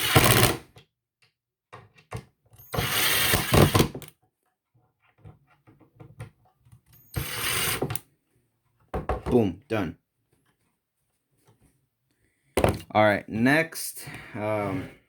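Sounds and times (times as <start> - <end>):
impact driver driving screws: 0.0 - 0.6, 2.7 - 4.1, 7.2 - 8.0.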